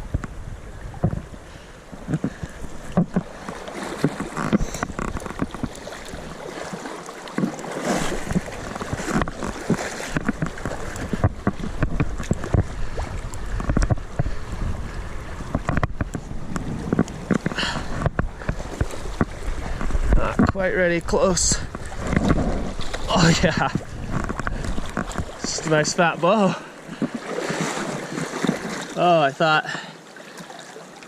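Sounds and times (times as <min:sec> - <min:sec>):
splashes and knocks: 0:00.0 - 0:29.6
rushing river water: 0:00.0 - 0:31.0
wind buffeting microphone: 0:08.1 - 0:26.0.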